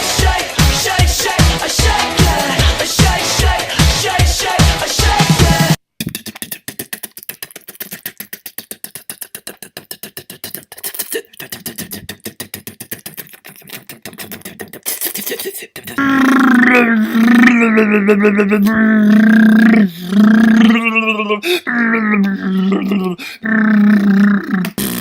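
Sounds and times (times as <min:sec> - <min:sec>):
mouth clicks: 0:06.0 - 0:25.0.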